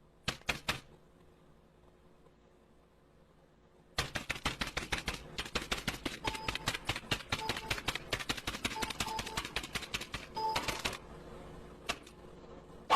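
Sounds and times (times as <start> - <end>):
keyboard typing clicks: 6.0 - 11.0.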